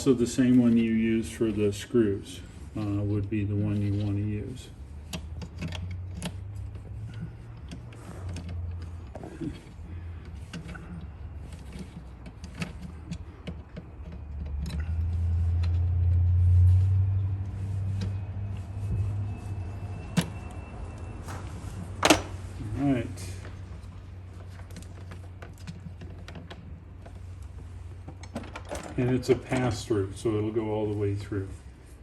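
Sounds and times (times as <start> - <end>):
hand tools clicking and tapping: 5.0 - 16.3.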